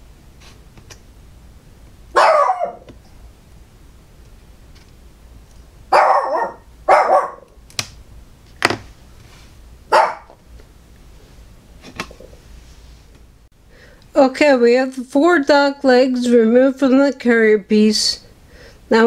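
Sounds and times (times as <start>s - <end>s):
dog barking: 2.2s - 2.9s, 5.9s - 7.5s, 9.9s - 10.4s.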